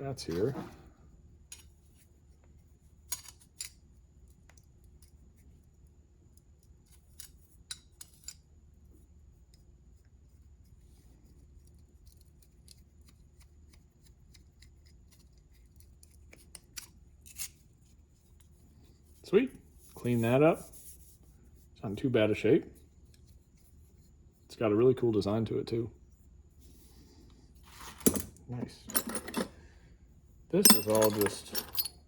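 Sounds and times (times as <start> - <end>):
metal tools clinking: 27.8 - 29.6, 30.6 - 32.0.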